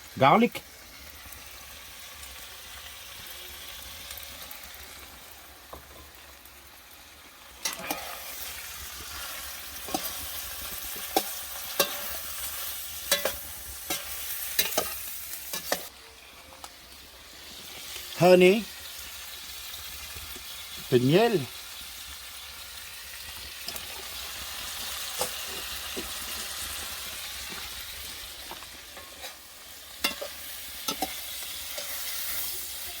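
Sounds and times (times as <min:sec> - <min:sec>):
shrimp sizzling in a pan: 0:00.0 - 0:33.0
utensil scraping a pan: 0:07.6 - 0:15.9.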